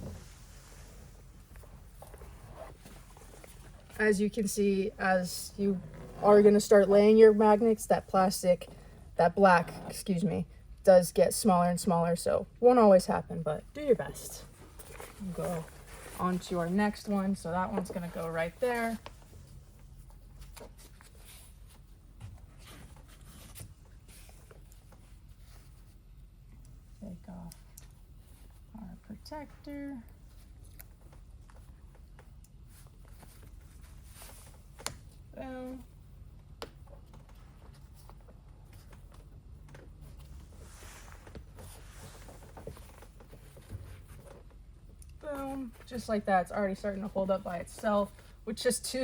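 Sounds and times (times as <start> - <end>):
low steady hum: 0.0 - 49.0.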